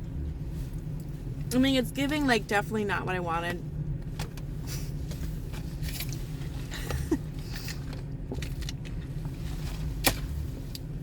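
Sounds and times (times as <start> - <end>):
car rumble from inside cabin: 0.0 - 11.0.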